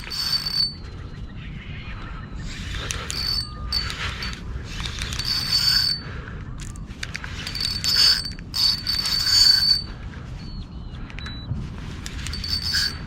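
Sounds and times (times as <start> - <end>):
fishing reel drag buzzing: 0.0 - 0.9, 2.5 - 10.0, 12.0 - 13.0.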